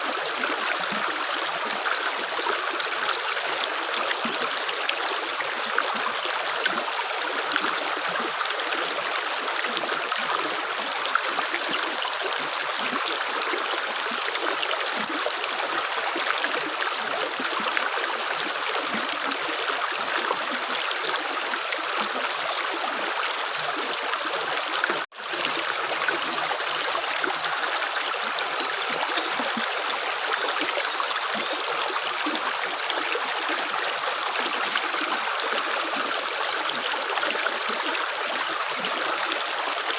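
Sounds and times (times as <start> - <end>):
stream babbling: 0.0 - 39.9.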